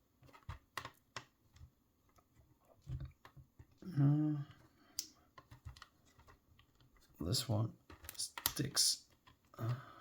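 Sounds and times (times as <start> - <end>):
person humming briefly: 3.8 - 4.6
small plastic clicks and taps: 7.8 - 9.8.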